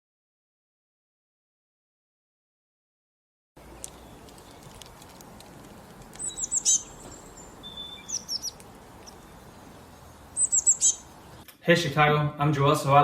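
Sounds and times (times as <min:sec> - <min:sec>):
songbirds chirping: 0:03.6 - 0:11.5
bird held whistle: 0:10.4 - 0:11.0.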